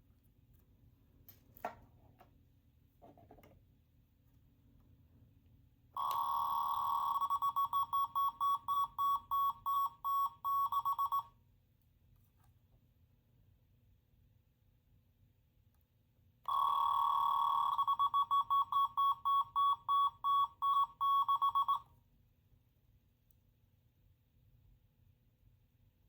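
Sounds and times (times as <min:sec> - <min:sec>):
electronic alarm beep: 0:06.0 - 0:11.3, 0:16.5 - 0:21.9.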